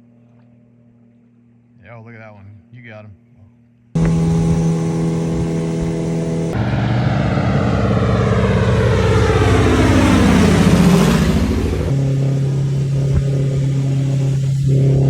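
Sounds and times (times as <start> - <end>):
hiss sweeping downward: 4.0 - 15.0
loud engine running: 4.0 - 15.0.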